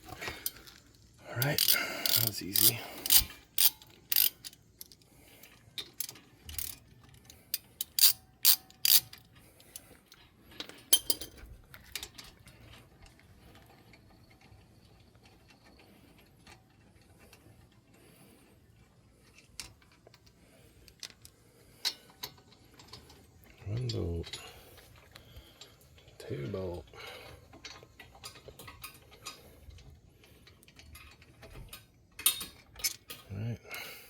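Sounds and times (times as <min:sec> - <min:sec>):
metal tools clinking: 0:00.0 - 0:05.0, 0:05.8 - 0:06.9, 0:07.6 - 0:09.8, 0:10.7 - 0:12.2
ratchet wrench clicking: 0:01.4 - 0:05.0, 0:05.8 - 0:06.8, 0:07.5 - 0:09.8.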